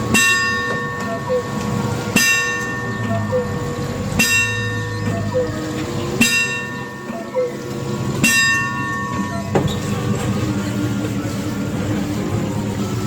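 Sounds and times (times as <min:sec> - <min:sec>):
clock bell striking: 0:00.0 - 0:10.3
steady low hum: 0:00.0 - 0:13.0.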